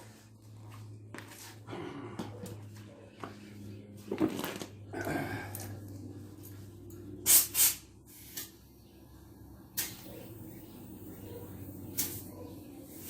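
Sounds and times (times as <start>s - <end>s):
steady low hum: 0.0s - 13.0s
handling noises: 0.3s - 6.8s
air hissing from tyre valve: 7.3s - 8.5s.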